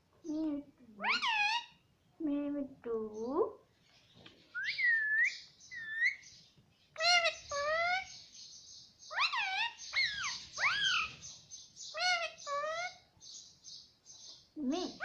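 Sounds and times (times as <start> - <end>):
parakeet calling: 1.0 - 1.8, 4.5 - 15.0.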